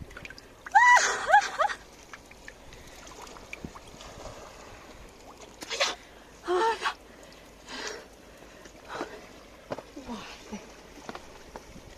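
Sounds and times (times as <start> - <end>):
rush of water: 0.0 - 11.9
shallow water trickling and sloshing: 0.0 - 11.9.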